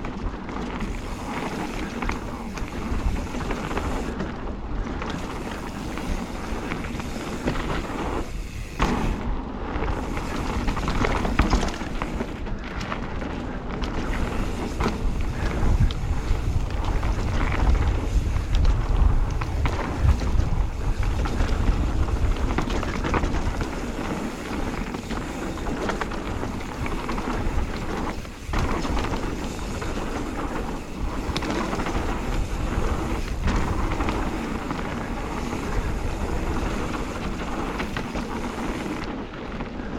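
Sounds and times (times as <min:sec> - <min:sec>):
bike rattling over bumps: 0:00.0 - 0:39.9
bike tyres rolling over dirt: 0:00.0 - 0:39.9
wind buffeting microphone: 0:00.0 - 0:39.9.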